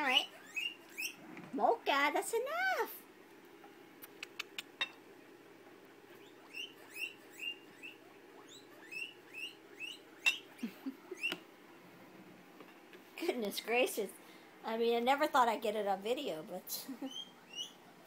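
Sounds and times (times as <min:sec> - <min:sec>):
guinea pig squeaking: 0:00.0 - 0:03.0, 0:06.0 - 0:11.5, 0:16.7 - 0:18.0
sharp clicks: 0:04.0 - 0:04.8.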